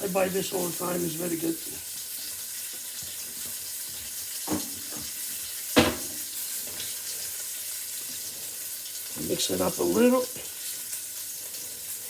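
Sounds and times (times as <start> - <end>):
oil sizzling in pot: 0.0 - 12.0
knock on pot: 4.5 - 5.1, 5.8 - 6.2.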